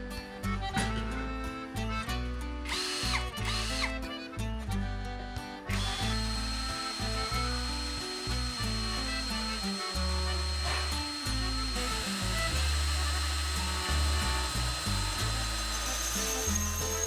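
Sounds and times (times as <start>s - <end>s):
background music with bass line: 0.0s - 17.0s
power tool whining: 2.7s - 4.2s, 5.7s - 17.0s.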